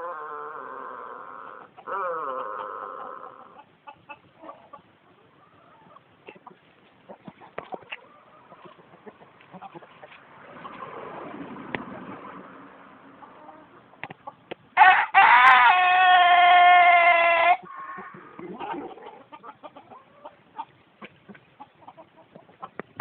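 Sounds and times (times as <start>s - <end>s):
faint clucks and clicks: 5.8s - 10.9s, 13.9s - 14.6s, 18.0s - 23.0s
rooster crowing: 14.8s - 18.4s.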